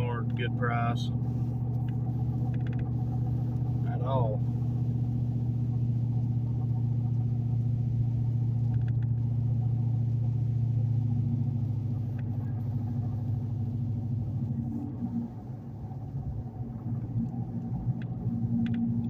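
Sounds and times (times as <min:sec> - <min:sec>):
truck engine and road noise: 0:00.0 - 0:19.0
faint clicks: 0:08.6 - 0:09.2, 0:17.2 - 0:19.0.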